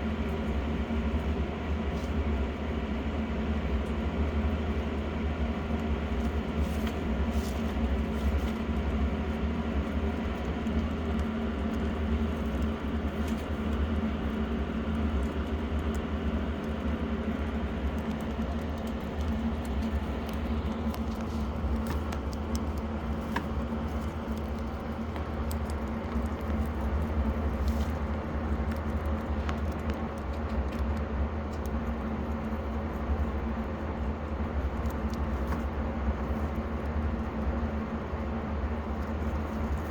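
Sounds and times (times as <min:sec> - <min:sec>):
electric fan humming: 0:00.0 - 0:39.9
faint small clicks and rustles: 0:03.0 - 0:39.9.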